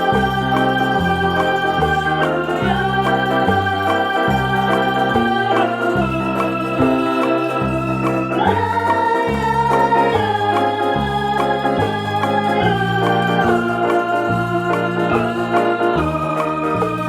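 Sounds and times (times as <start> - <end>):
organ-like electronic chords: 0.0 - 17.0
pulsing bass line: 0.0 - 17.0.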